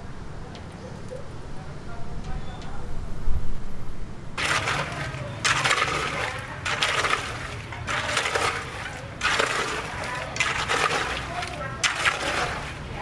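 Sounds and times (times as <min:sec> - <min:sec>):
gritty scraping strokes: 0:04.4 - 0:13.0.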